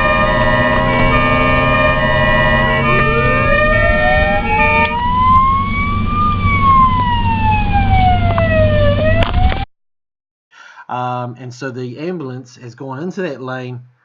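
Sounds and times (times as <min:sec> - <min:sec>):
cluster of steady tones: 0:00.0 - 0:09.2
ambulance siren wailing: 0:00.0 - 0:09.7
road rumble: 0:00.0 - 0:09.7.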